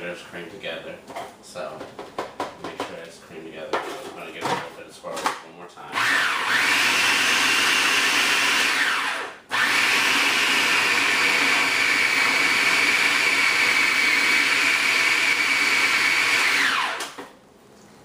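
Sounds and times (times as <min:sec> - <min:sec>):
electric mixer whining: 0:05.9 - 0:17.3.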